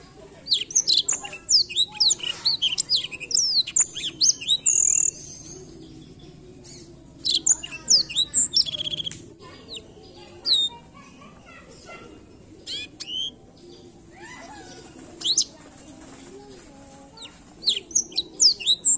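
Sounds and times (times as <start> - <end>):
canary singing chirps and whistles: 0.5 - 10.8, 12.6 - 13.4, 14.2 - 15.5, 17.3 - 18.9.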